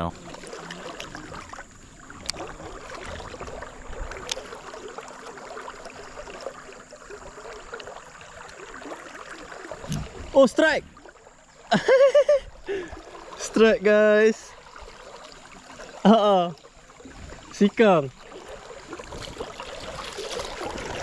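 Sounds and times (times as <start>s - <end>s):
stream water running: 0.0s - 21.0s
faint clicks: 4.2s - 4.5s.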